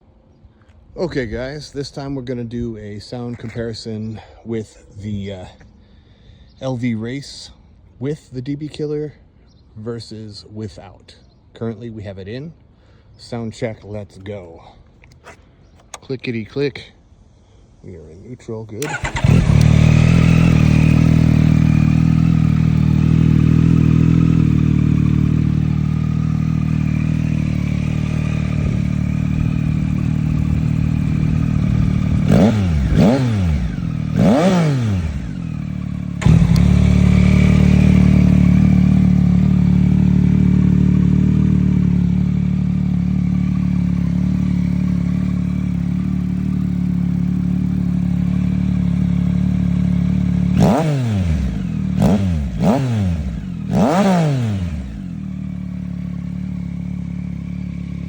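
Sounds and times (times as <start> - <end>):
motorcycle throttle blips: 15.0 - 16.2, 18.8 - 58.0
motorcycle engine idling: 18.8 - 58.0.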